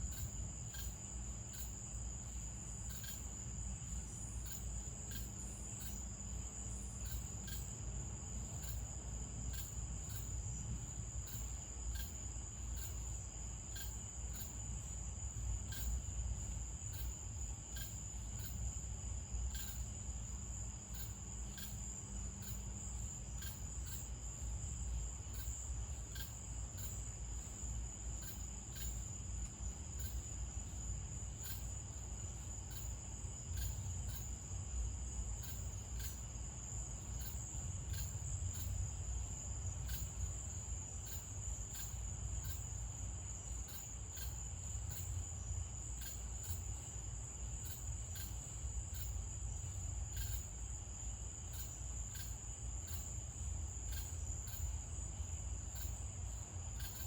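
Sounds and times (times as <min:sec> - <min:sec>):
crickets trilling: 0:00.0 - 0:57.0.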